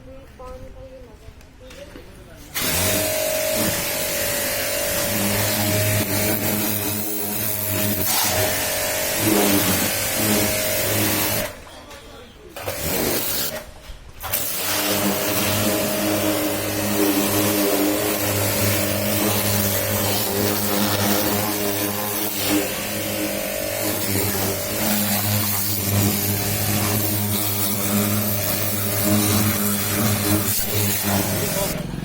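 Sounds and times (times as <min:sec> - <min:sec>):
pressure washer motor hum: 0:02.5 - 0:11.7, 0:12.6 - 0:32.0.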